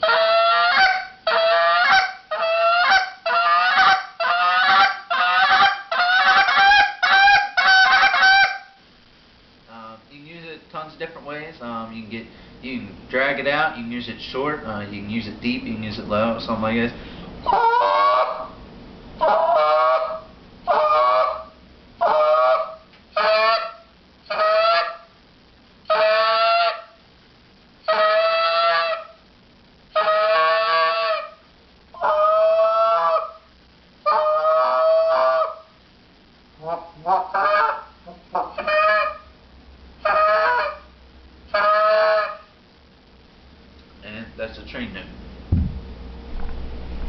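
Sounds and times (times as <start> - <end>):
goose call notes: 0.0 - 8.7, 17.4 - 18.6, 19.2 - 25.0, 30.0 - 31.4, 36.6 - 39.3, 40.0 - 40.9, 41.5 - 42.5.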